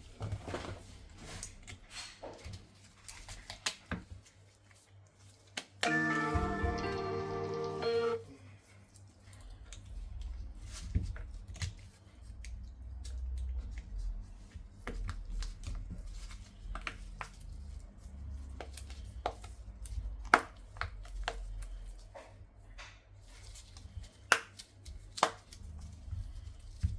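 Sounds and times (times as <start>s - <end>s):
background music: 5.8s - 8.2s.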